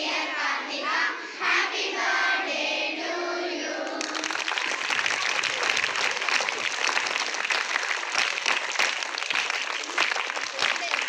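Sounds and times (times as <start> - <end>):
children clapping: 3.8 - 11.0.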